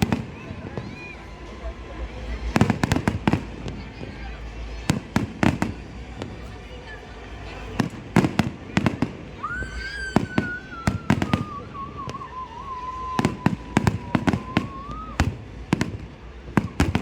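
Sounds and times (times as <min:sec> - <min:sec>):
fireworks bangs: 0:00.0 - 0:17.0
falling firework whistle: 0:09.4 - 0:15.9.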